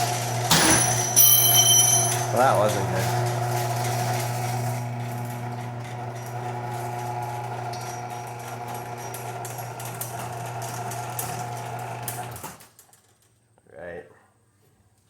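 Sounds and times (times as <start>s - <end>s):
garage door opener motor hum: 0.0s - 12.9s
chain clattering along rail: 0.5s - 2.8s.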